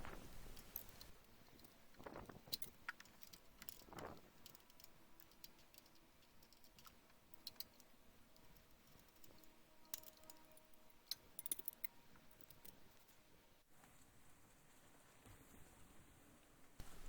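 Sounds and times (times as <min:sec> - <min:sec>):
hand tools clicking and tapping: 0:00.4 - 0:13.2.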